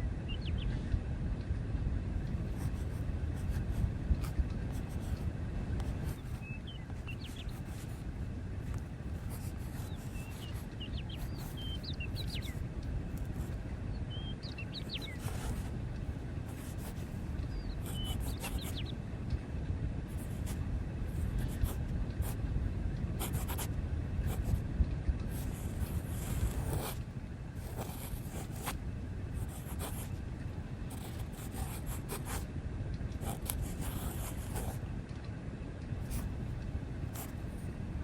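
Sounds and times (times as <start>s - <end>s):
low background hum: 0.0s - 38.0s
pen writing on paper: 2.4s - 13.6s, 14.6s - 15.8s, 16.4s - 18.9s, 20.1s - 22.4s, 23.1s - 24.6s, 25.2s - 30.2s, 30.8s - 32.4s, 33.1s - 34.8s, 36.1s - 36.4s, 37.1s - 37.7s.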